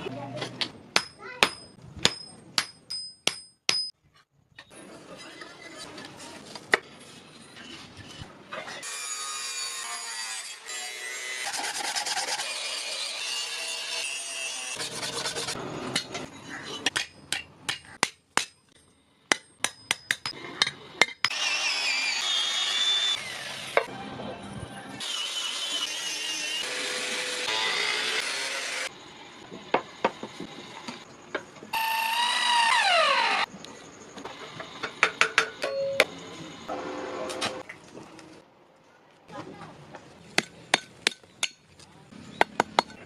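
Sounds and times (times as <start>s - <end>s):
steel scraping and grinding: 4.8s - 9.2s.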